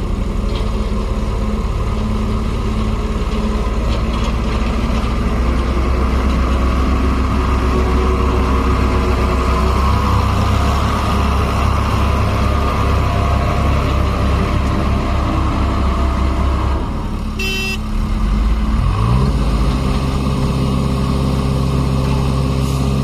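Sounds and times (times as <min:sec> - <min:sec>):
heavy diesel engine running: 0:00.0 - 0:23.0
vehicle horn toot: 0:17.4 - 0:17.9.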